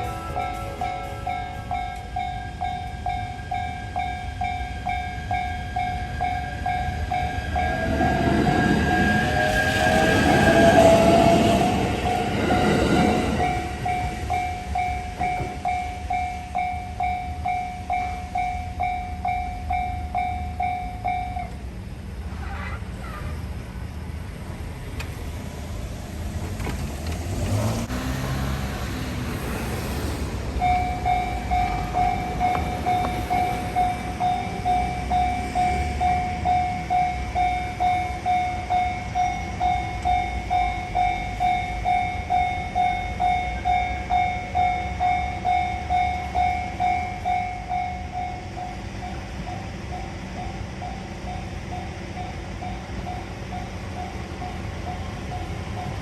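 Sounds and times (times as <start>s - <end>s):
level-crossing alarm ringing: 0.0s - 21.6s, 30.6s - 56.0s.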